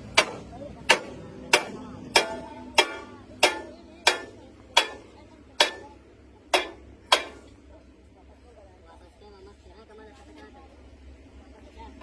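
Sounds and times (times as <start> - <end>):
hammer striking steel: 0.0 - 7.6.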